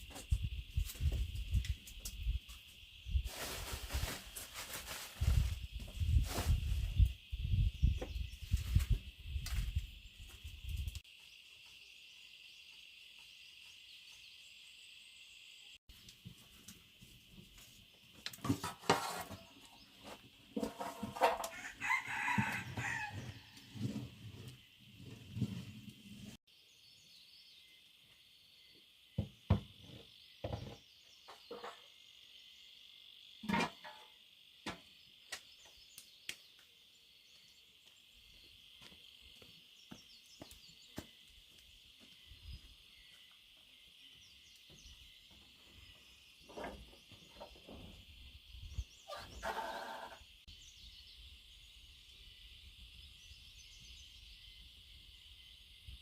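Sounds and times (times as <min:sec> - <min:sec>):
high-pitched insect chorus: 0:00.0 - 0:15.8, 0:21.0 - 0:23.8, 0:26.5 - 0:56.0
knocks and thuds: 0:29.2 - 0:30.8.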